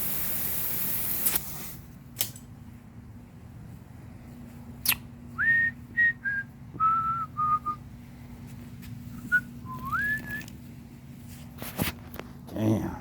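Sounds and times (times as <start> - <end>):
person whistling a tune: 5.4 - 7.8, 9.2 - 10.5.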